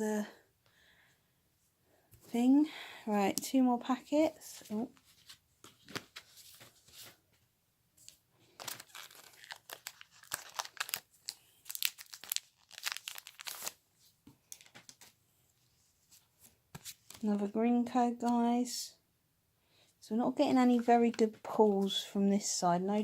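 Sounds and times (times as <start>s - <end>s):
foil wrapper tearing and crinkling: 8.6s - 13.8s.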